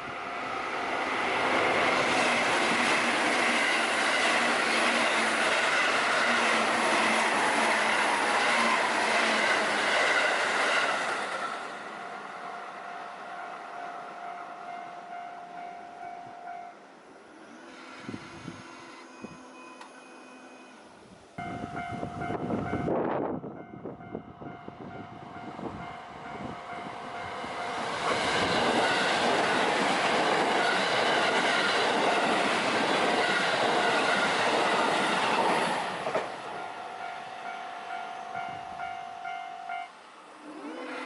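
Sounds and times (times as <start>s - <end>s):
electric train passing: 0.0s - 41.0s
crossing warning bell ringing: 11.7s - 17.0s, 18.4s - 28.0s, 36.3s - 40.0s.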